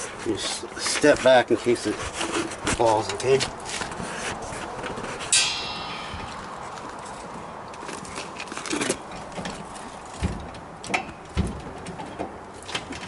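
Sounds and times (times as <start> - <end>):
faint background noise: 0.0 - 13.0
knocks and dull thumps: 9.3 - 12.4.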